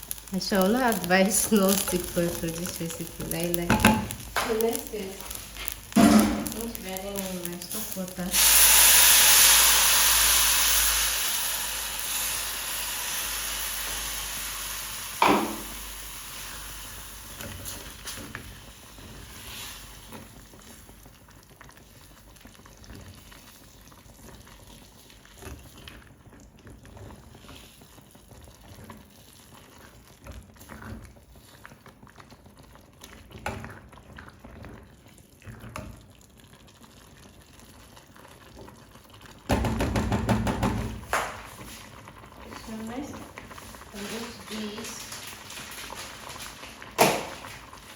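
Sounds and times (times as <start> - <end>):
liquid sizzling in hot oil: 0.0 - 47.9
stirring scrapes and clinks in pot: 0.5 - 8.0, 22.9 - 31.8.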